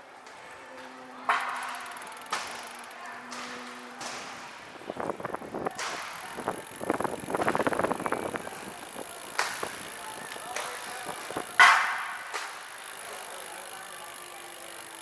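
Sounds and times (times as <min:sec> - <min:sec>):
wind and tyre rush: 0:04.4 - 0:12.0.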